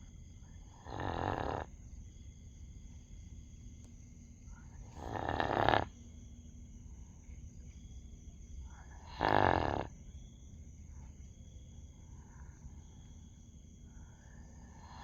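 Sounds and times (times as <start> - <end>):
dog snoring: 0.6 - 1.8, 4.8 - 6.0, 9.0 - 9.9, 14.6 - 15.0.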